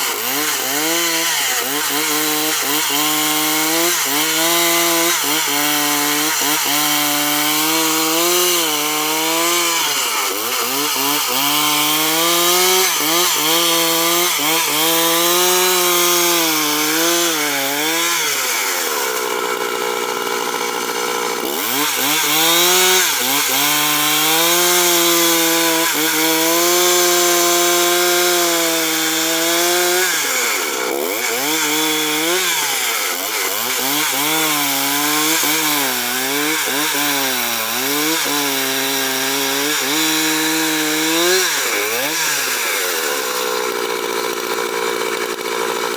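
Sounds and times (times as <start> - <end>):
chainsaw cutting wood: 0.0 - 45.9.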